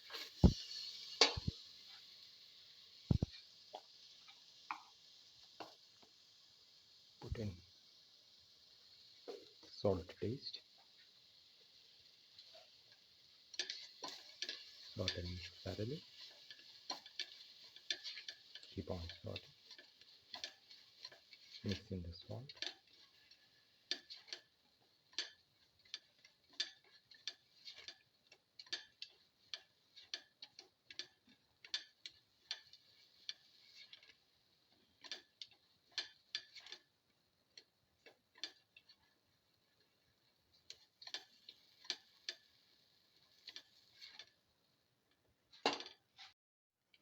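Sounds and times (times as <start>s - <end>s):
utensil scraping a pan: 13.5s - 36.9s, 40.6s - 42.5s, 43.2s - 44.4s.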